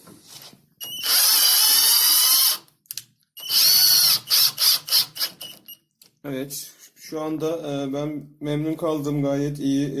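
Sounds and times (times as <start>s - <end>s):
cordless drill driving a screw: 0.8s - 2.7s, 3.4s - 5.7s.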